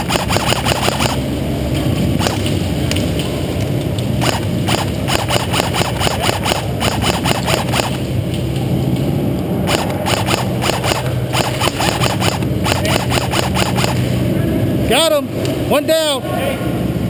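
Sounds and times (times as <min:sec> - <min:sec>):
airsoft guns firing: 0:00.0 - 0:01.3, 0:02.1 - 0:02.5, 0:04.2 - 0:08.0, 0:09.6 - 0:14.0
steady low hum: 0:00.0 - 0:17.0.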